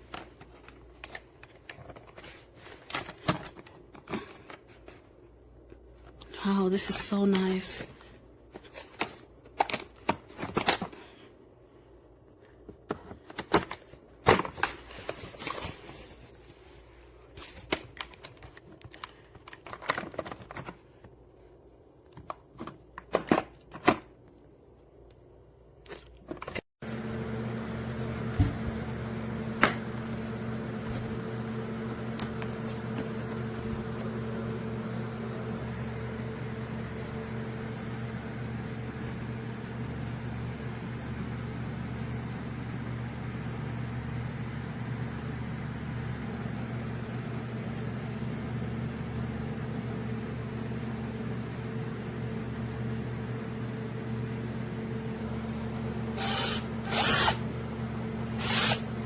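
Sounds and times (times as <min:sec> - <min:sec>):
plastic parts clicking and clattering: 0:00.0 - 0:04.8, 0:17.5 - 0:20.9
steady mechanical hum: 0:00.0 - 0:59.0.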